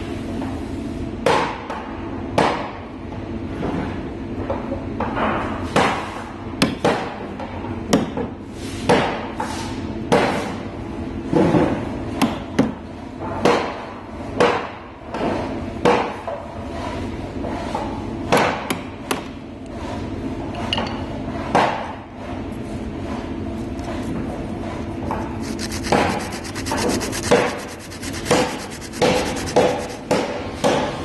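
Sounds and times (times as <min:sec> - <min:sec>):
hammer tapping wood chisel: 0:25.4 - 0:30.2.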